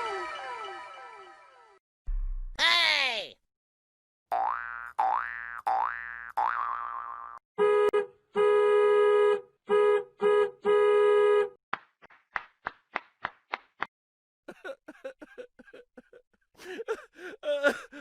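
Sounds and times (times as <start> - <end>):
car horn honking: 7.6 - 11.6.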